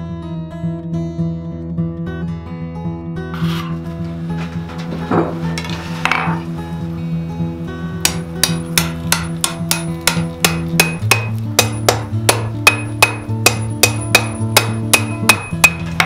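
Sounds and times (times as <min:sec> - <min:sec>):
background music: 0:00.0 - 0:16.0
hammer striking steel on anvil: 0:08.0 - 0:16.0.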